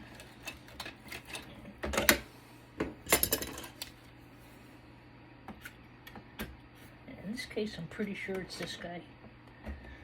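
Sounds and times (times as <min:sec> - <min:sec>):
metal tools clinking and rattling: 0:03.1 - 0:03.8.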